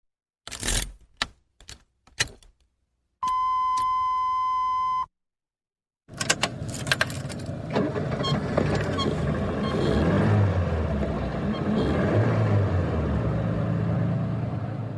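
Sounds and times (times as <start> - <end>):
keys rattling: 6.1 - 7.6
car engine cranking and running: 6.1 - 14.9.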